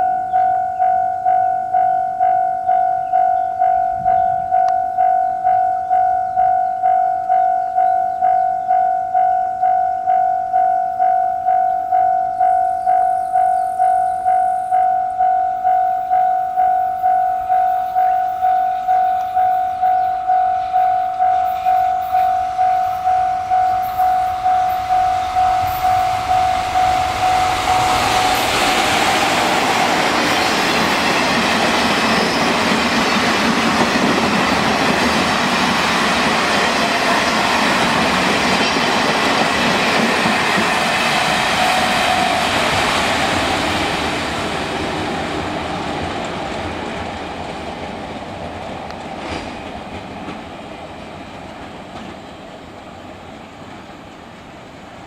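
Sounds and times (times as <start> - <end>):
level crossing alarm ringing: 0.0 - 46.1
freight train passing: 0.0 - 55.0
wheels clattering over rail joints: 42.3 - 50.6.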